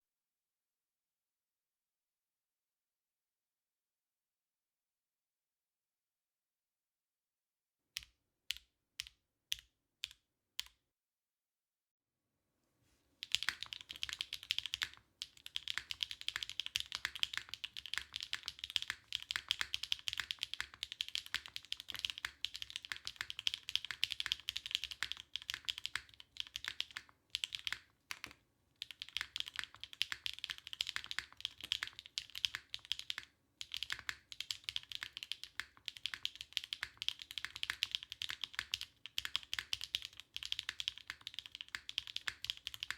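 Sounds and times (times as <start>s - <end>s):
mechanical keyboard typing: 13.2s - 42.9s.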